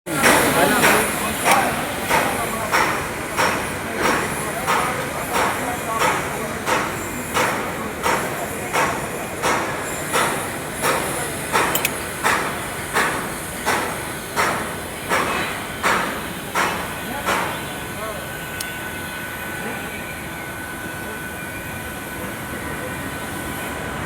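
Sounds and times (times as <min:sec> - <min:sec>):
hammer striking metal: 0:00.2 - 0:17.6.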